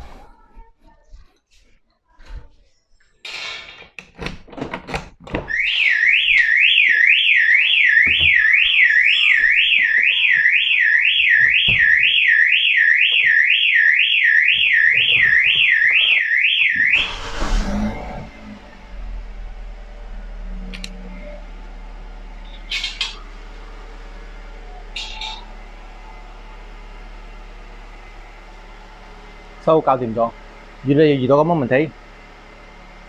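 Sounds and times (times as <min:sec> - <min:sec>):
car alarm siren wailing: 0:05.5 - 0:27.0
car engine starting: 0:05.5 - 0:33.0.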